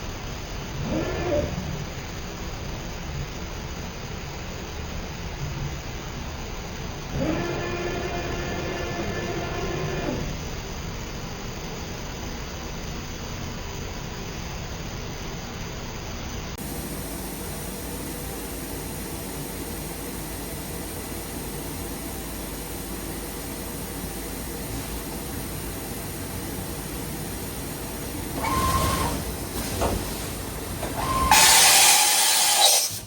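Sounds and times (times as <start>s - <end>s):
machining center humming: 0.0s - 16.9s, 24.0s - 33.0s
machine whine: 6.4s - 12.3s, 27.4s - 33.0s.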